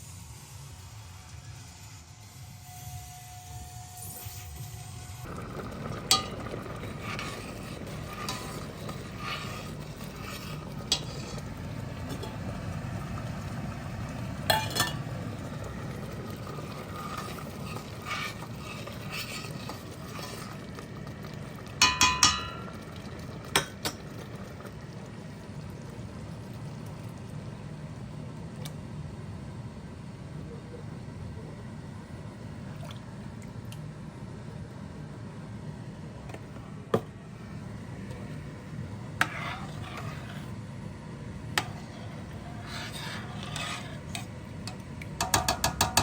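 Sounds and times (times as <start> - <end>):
steady low hum: 4.4 - 46.0
dishes and utensils clinking: 14.5 - 15.2, 21.8 - 22.8.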